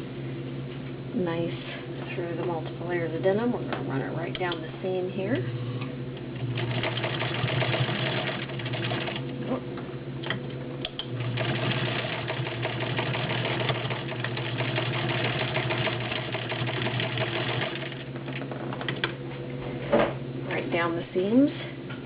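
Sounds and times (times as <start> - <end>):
sewing machine stitching denim: 6.6 - 9.2, 11.2 - 18.1.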